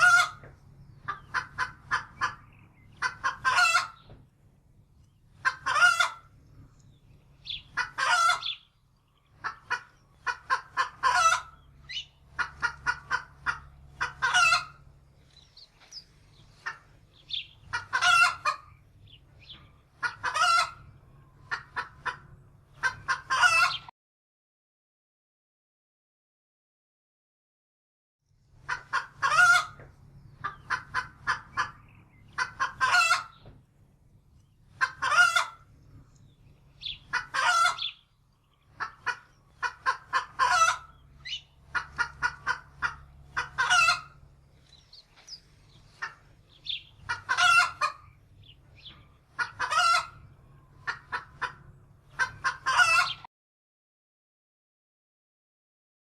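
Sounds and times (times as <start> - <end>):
chicken clucking: 0.0 - 4.2, 5.0 - 23.9, 28.5 - 33.6, 34.3 - 53.3
faint low hum: 0.0 - 23.0.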